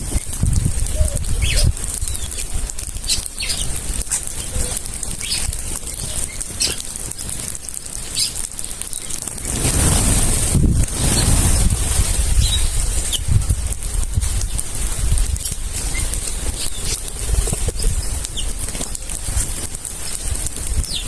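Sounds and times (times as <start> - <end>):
bird wings flapping: 0.0 - 21.0
short bird chirps and clicks: 1.1 - 3.7, 4.4 - 7.3, 8.1 - 9.2.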